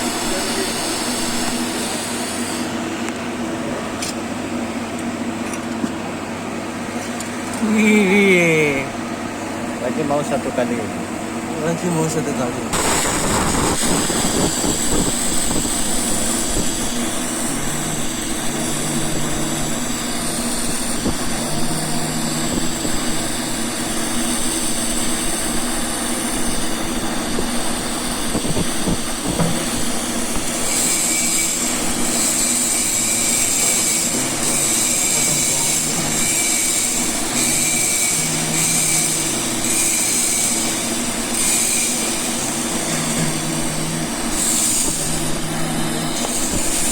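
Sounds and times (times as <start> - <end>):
welding arc hissing and buzzing: 0.0 - 2.9, 12.7 - 46.9.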